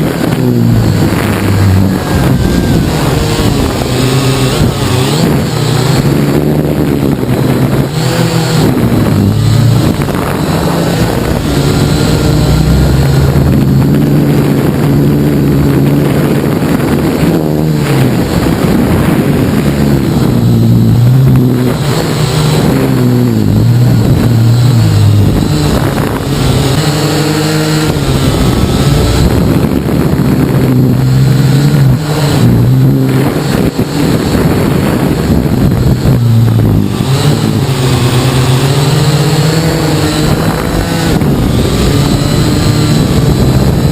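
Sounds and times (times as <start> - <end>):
quadcopter propellers buzzing: 0.0 - 43.9.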